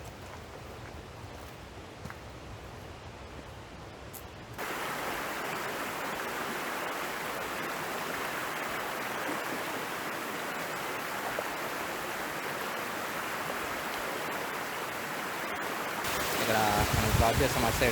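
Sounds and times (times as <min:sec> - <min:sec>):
stream water rushing: 0:04.6 - 0:17.9.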